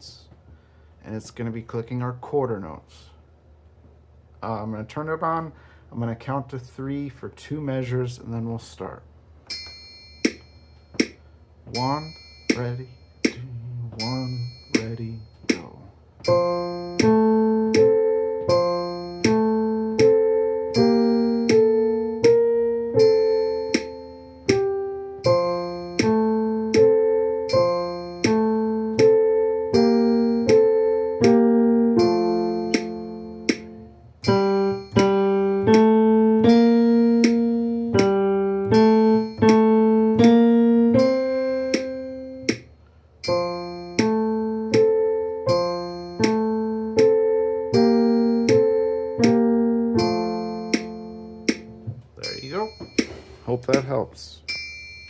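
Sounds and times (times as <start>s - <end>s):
metronome clicks: 9.5s - 55.0s
metronome ding: 9.5s - 55.0s
slow piano melody: 11.7s - 15.6s, 16.2s - 53.4s.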